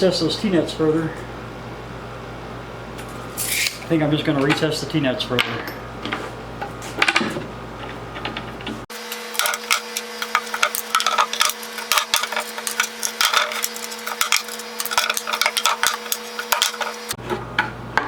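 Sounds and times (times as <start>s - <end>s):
steady hum: 0.0s - 17.8s
tools clattering against wood: 5.4s - 17.2s.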